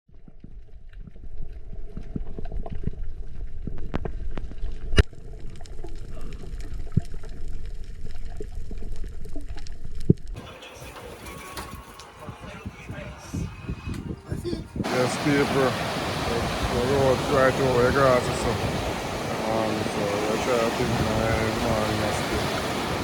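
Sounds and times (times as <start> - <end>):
underwater rumble of moving water: 0.1 - 10.4, 14.8 - 23.0
open-air sound: 10.4 - 23.0.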